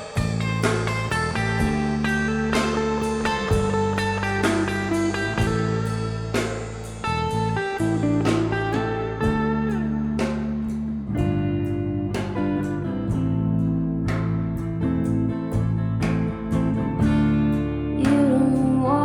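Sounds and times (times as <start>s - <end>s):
drum hits: 0.0s - 11.6s
bass notes: 0.0s - 19.0s
guitar with sliding note: 0.0s - 19.0s.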